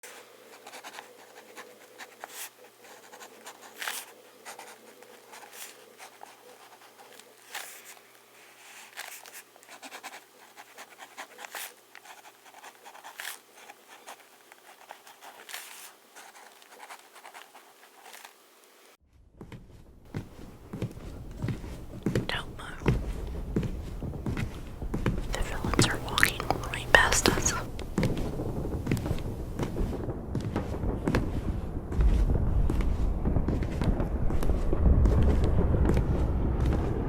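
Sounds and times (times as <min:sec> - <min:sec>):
faint hiss and hum: 0:00.0 - 0:19.0, 0:20.1 - 0:27.7.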